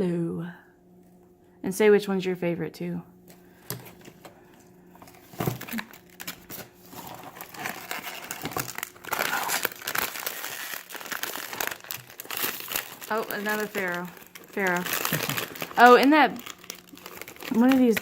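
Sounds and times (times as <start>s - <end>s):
plastic bag crinkling: 5.0s - 18.0s.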